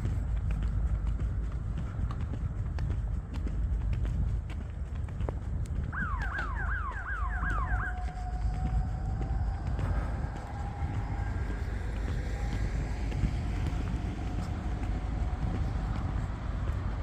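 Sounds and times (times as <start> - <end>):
low rumble of distant engines: 0.0 - 17.0
faint steady tone: 6.0 - 13.3.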